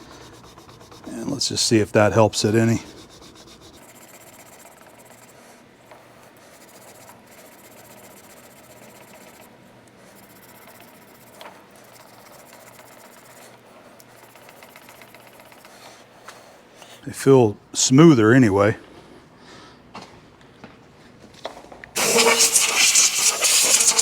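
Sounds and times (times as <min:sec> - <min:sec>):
scouring pad buffing metal: 0:22.0 - 0:24.0.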